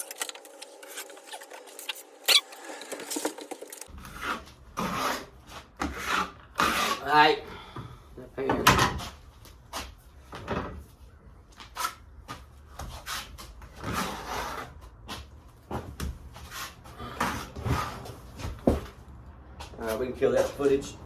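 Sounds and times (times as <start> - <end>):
drywall knife scraping and knocking: 3.9 - 7.1, 12.8 - 18.9.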